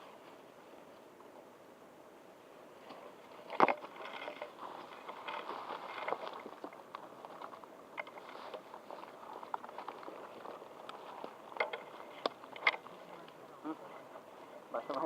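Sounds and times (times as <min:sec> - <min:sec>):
rustling through brush: 0:00.0 - 0:01.6, 0:02.4 - 0:15.0
small clicks of twigs: 0:02.8 - 0:13.4.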